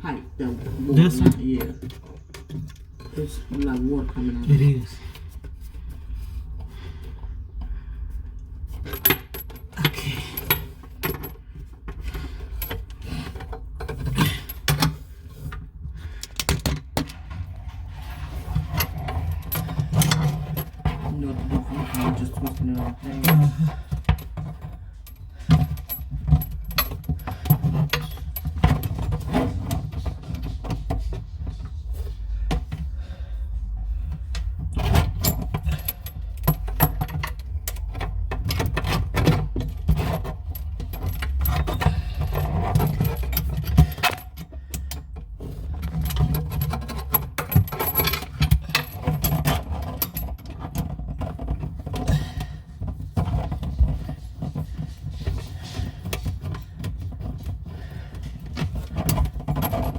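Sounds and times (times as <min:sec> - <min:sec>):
small metallic clinks and knocks: 0:08.6 - 0:15.0, 0:18.6 - 0:31.5, 0:34.3 - 0:59.9
steady low rumble: 0:30.0 - 0:44.0.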